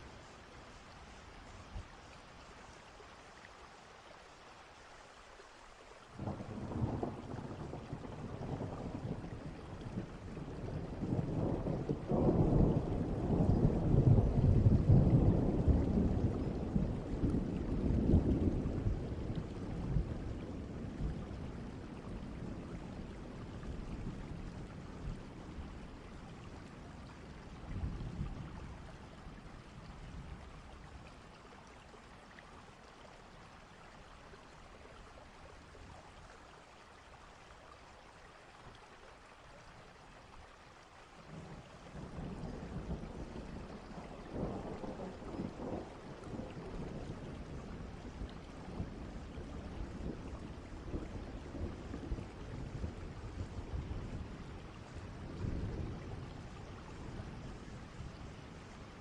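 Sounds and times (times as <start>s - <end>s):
steady rain: 0.0s - 59.0s
rolling thunder: 6.2s - 25.6s.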